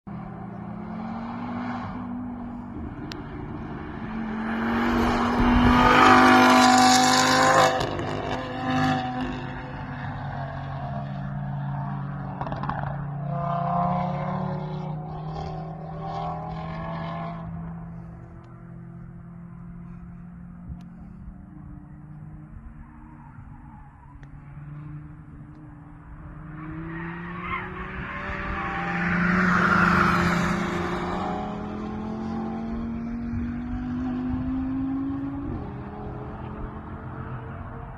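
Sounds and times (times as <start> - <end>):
race car engine passing: 0.1 - 37.9.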